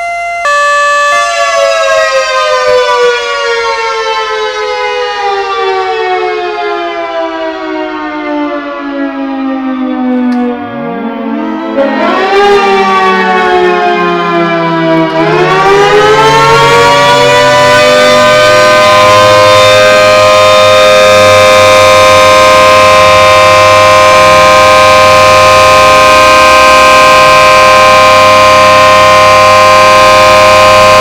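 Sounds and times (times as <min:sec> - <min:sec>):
warning siren: 0:00.0 - 0:31.0.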